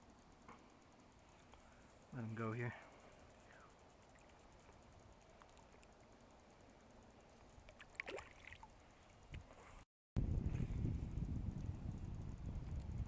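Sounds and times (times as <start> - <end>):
faint river: 0.0 - 9.9
fish splashing in water: 7.7 - 8.7.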